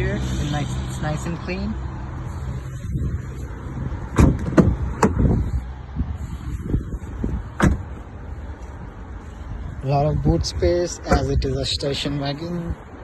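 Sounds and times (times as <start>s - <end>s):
car doors clunking: 4.1s - 5.4s, 7.5s - 8.1s.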